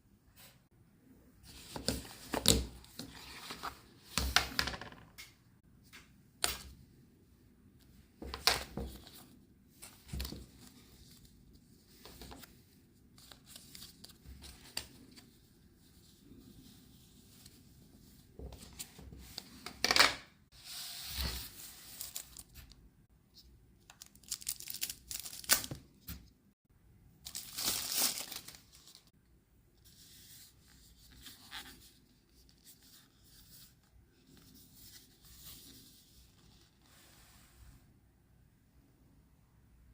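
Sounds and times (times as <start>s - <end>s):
packaging torn and crinkled: 23.9s - 25.8s, 27.3s - 29.1s.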